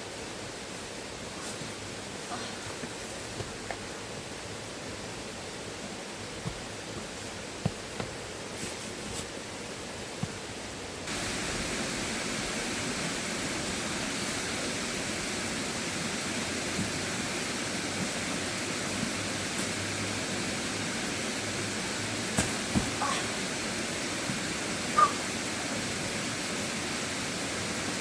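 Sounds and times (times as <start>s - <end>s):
river water rushing: 11.1s - 28.0s.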